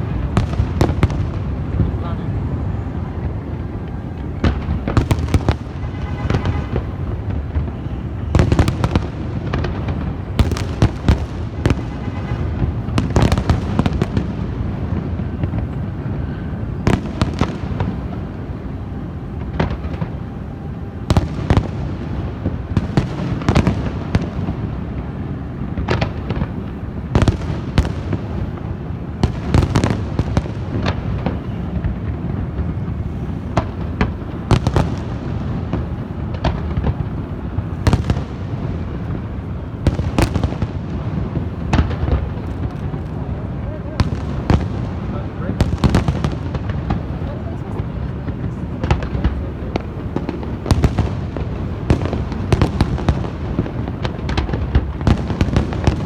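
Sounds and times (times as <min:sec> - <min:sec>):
fireworks bangs and cracks: 0:00.0 - 0:56.0
low rumble of explosions: 0:00.0 - 0:56.0.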